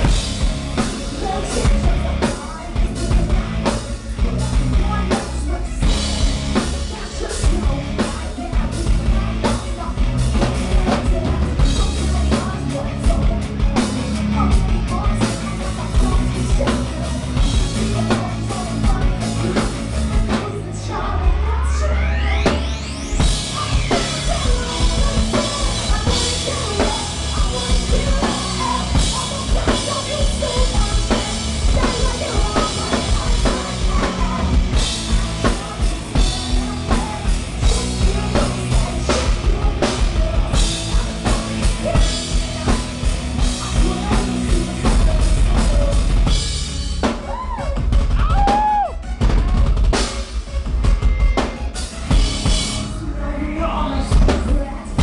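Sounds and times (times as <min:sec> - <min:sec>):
pounding drum kit: 0:00.0 - 0:21.6, 0:22.4 - 0:55.0
rock band playing live: 0:00.0 - 0:55.0.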